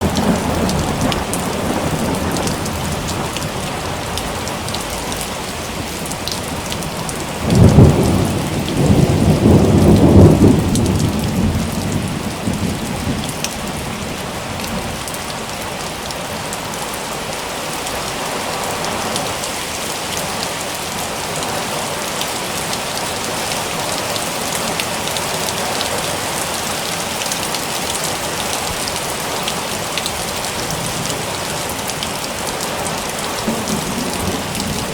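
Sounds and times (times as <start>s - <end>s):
thunder crack and rumble: 0.0s - 15.3s, 32.9s - 34.9s
steady rain: 0.0s - 34.9s.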